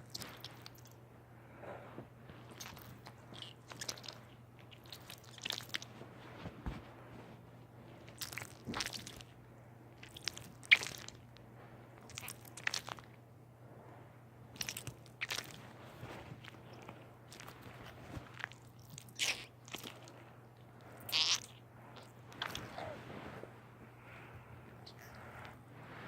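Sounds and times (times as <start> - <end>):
squishy crunching noises: 0.0 - 1.0, 2.3 - 6.8, 8.0 - 9.4, 10.0 - 11.4, 12.0 - 13.2, 14.5 - 23.4, 24.0 - 26.0.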